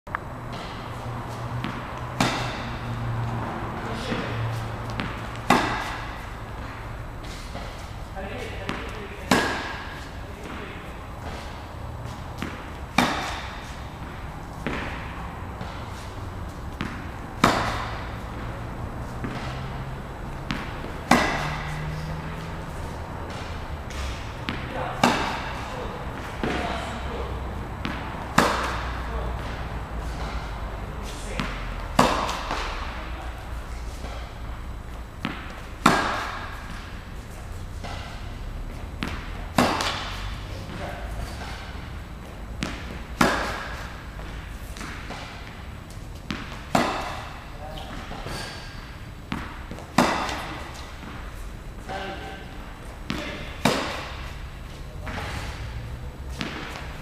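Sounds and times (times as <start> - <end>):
tennis balls struck by racquets: 0.1 - 57.0.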